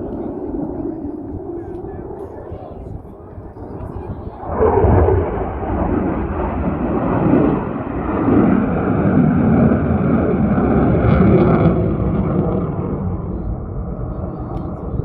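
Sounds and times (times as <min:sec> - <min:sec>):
jet engine rumble: 0:00.0 - 0:15.0.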